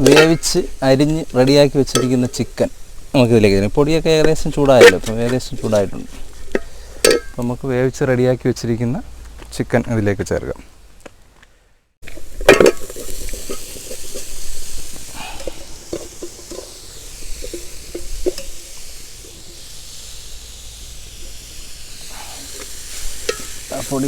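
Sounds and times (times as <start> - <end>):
chicken sizzling in a pan: 0.0 - 7.0, 12.0 - 24.0
frying hiss: 0.0 - 11.4, 12.0 - 24.0
spoon scraping a pan: 12.0 - 19.6, 22.5 - 23.7.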